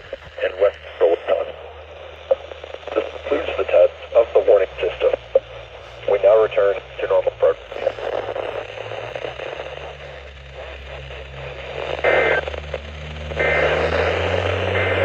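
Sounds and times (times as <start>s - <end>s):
low hum: 0.0s - 15.0s
radio static hiss: 0.0s - 15.0s
two-tone data bursts: 11.7s - 12.6s, 13.3s - 15.0s.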